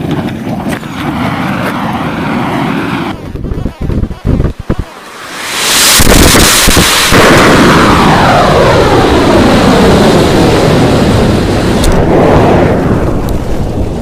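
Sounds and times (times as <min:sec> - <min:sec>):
rocket motor roaring: 0:00.7 - 0:14.0
sharp cracks: 0:11.7 - 0:13.5.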